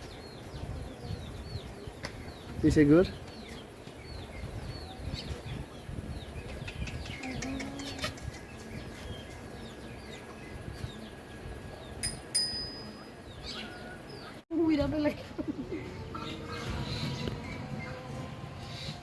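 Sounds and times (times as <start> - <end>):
young birds chirping: 0.0 - 12.0, 12.9 - 14.4.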